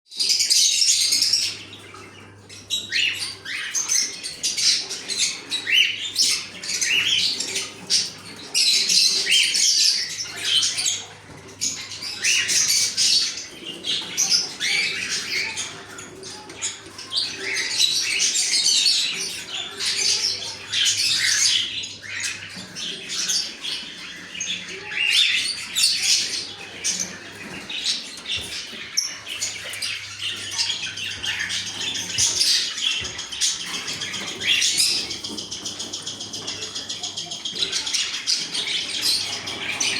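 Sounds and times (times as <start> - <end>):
parrots chattering and chirping: 0.1 - 39.9.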